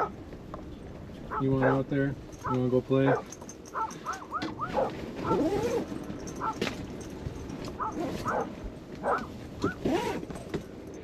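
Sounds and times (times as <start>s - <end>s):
dogs barking and yipping: 0.0s - 0.2s, 1.3s - 10.4s.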